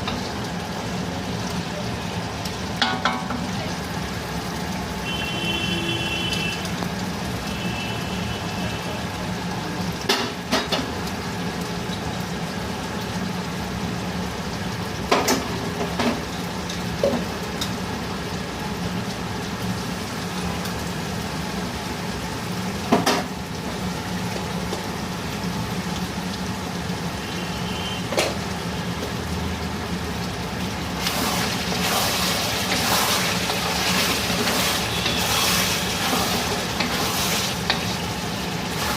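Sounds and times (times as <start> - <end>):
food sizzling in a pan: 0.0 - 38.9
stirring and scraping: 31.0 - 38.9.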